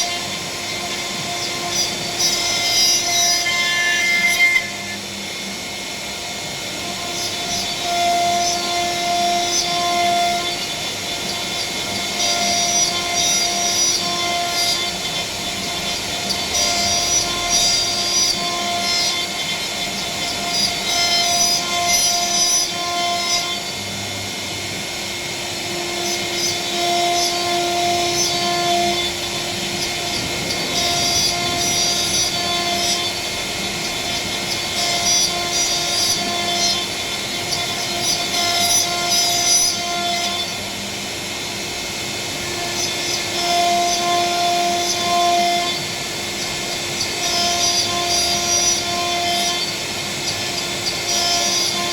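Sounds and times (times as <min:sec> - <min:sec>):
router bit cutting noise: 0:00.0 - 0:51.9
spindle whine: 0:23.7 - 0:38.4.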